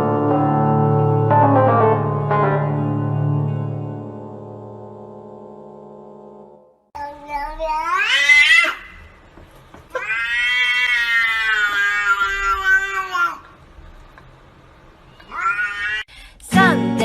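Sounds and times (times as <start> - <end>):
cat meowing: 7.3 - 9.1, 9.9 - 13.5, 15.2 - 16.1.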